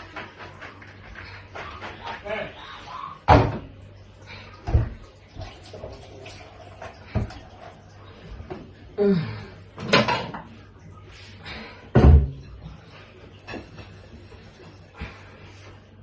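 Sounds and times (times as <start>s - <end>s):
kitchen knocks and clunks: 3.2s - 3.8s, 4.6s - 5.1s, 9.8s - 10.6s, 11.9s - 12.6s.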